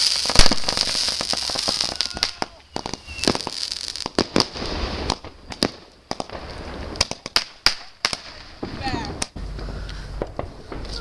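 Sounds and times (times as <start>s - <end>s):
fireworks bangs: 0.0s - 11.0s
fireworks crackling: 0.0s - 11.0s
low rumble: 8.4s - 11.0s.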